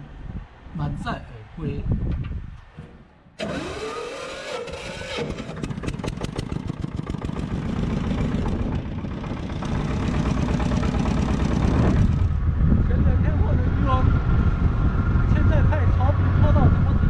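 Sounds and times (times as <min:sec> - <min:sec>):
boat engine clattering: 0:03.4 - 0:12.3.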